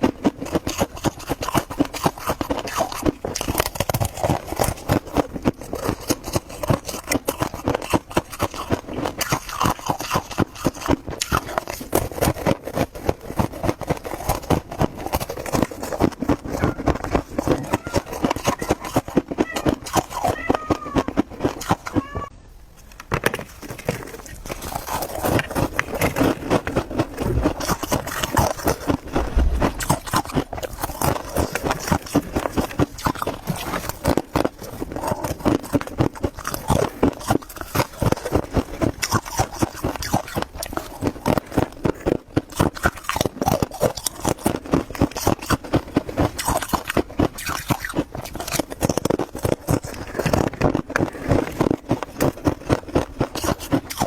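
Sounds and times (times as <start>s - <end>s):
frost being chewed and crunched: 0.0s - 54.0s.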